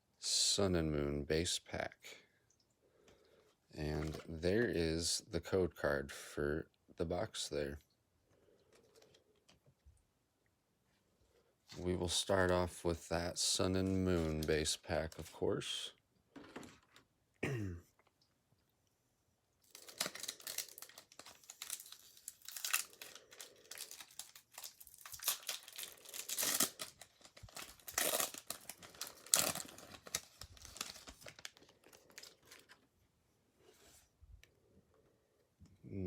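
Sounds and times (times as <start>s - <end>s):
foil wrapper tearing and crinkling: 19.6s - 32.8s.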